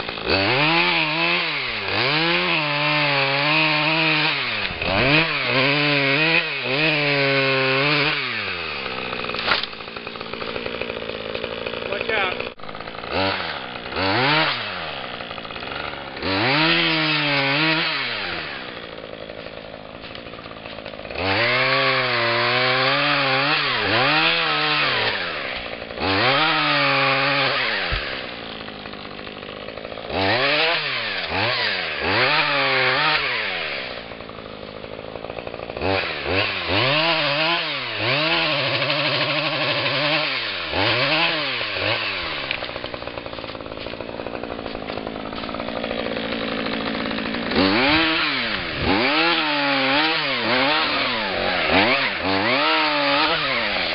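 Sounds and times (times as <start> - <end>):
chainsaw revving: 0.0 - 53.9.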